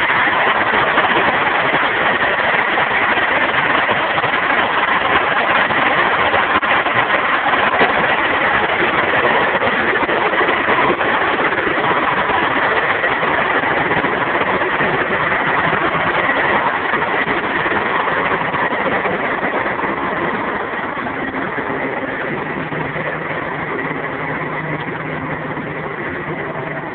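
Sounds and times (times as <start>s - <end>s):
diesel truck engine idling: 18.1s - 26.9s.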